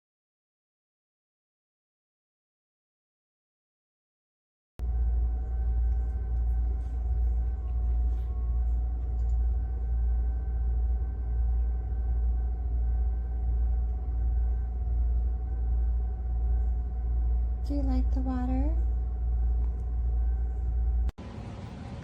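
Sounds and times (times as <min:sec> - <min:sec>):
faint steady hum: 0:04.8 - 0:22.0.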